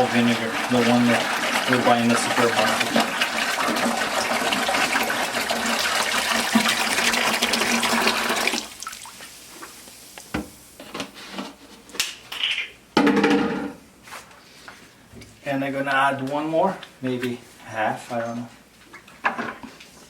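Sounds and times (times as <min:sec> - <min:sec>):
liquid pouring into bucket: 0:00.0 - 0:09.7.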